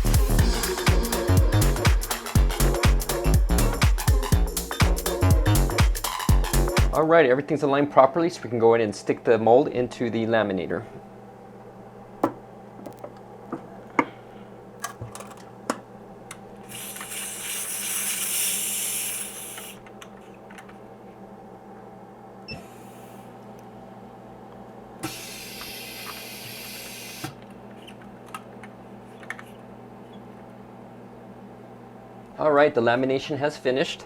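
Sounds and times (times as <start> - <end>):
steady machine hum: 0.0 - 34.0
laminator air hissing: 16.6 - 19.9, 22.5 - 23.4, 25.0 - 27.4.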